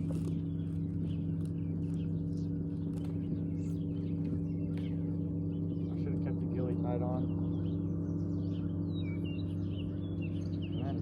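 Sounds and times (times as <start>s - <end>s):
low mechanical hum: 0.0s - 11.0s
small birds chirping: 0.0s - 11.0s.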